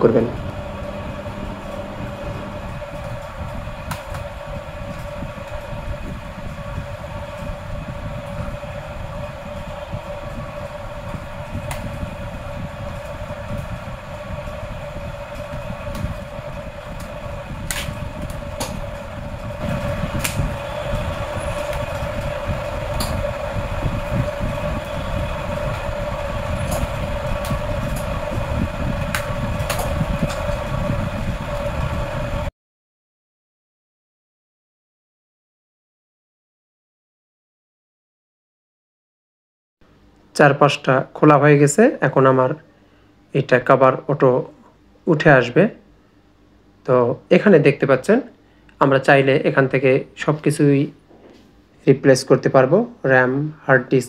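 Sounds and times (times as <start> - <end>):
background rumble: 0.0 - 32.5
constant hum: 0.0 - 32.5.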